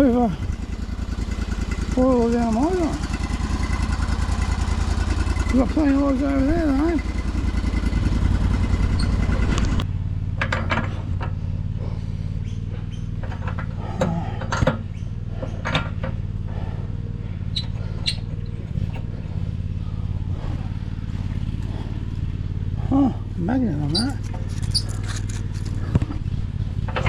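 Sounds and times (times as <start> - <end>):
engine running: 0.0 - 27.0.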